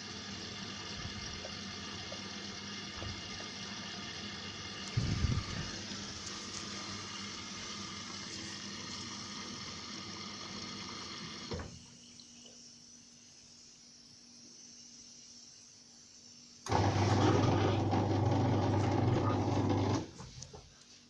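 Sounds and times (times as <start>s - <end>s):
washing machine low hum: 0.0s - 12.5s, 16.7s - 20.5s
water rushing through valve: 16.7s - 20.1s.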